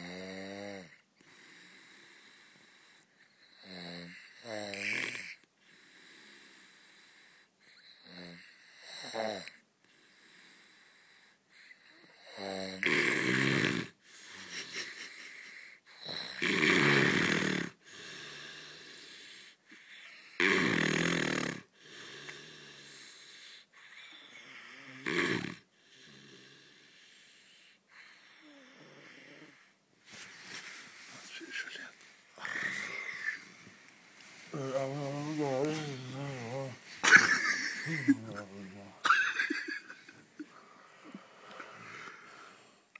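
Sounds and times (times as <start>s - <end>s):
man snoring: 0.0s - 2.0s, 3.5s - 6.7s, 8.0s - 9.6s, 12.0s - 14.7s, 15.5s - 27.2s, 28.3s - 29.7s, 31.6s - 33.5s, 34.5s - 36.8s, 37.4s - 39.0s.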